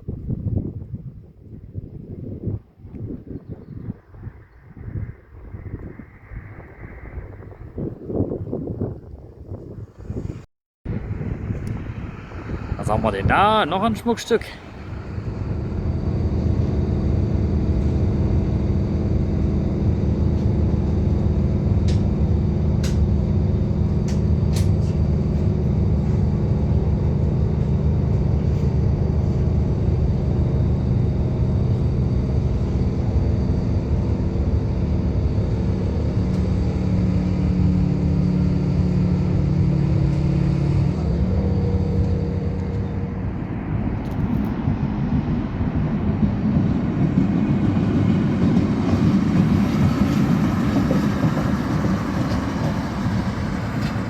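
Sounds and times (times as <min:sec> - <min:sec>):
locomotive diesel engine humming: 0:10.9 - 0:54.0.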